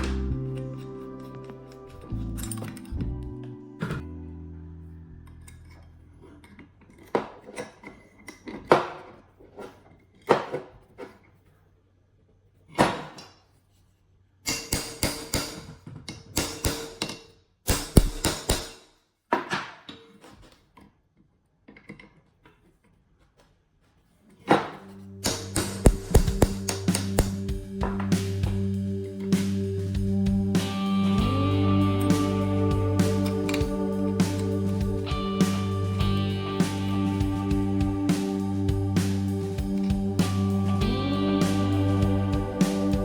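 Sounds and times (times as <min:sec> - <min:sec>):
metal tools clinking: 0:00.5 - 0:03.0
clattering strikes: 0:25.2 - 0:31.5.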